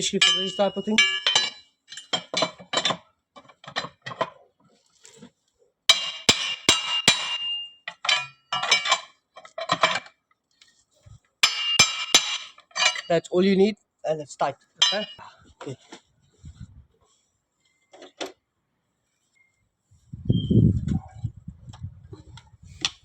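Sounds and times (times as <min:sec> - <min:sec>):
metal tool clinking on nut: 0:00.0 - 0:03.0, 0:05.9 - 0:10.0, 0:11.4 - 0:13.2, 0:14.8 - 0:15.2.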